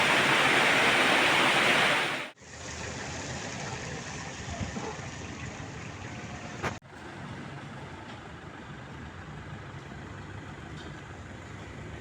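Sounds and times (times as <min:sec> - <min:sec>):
steady rushing noise: 0:00.0 - 0:02.4
vehicle engine running: 0:02.4 - 0:12.0.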